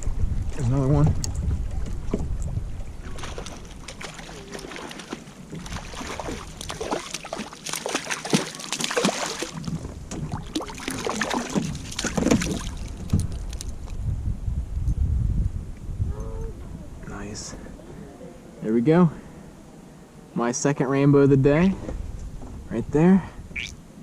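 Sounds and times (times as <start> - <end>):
wind rumble on microphone: 0.0 - 4.8, 9.5 - 19.7, 21.0 - 24.0
water splashing and sloshing: 0.0 - 14.0.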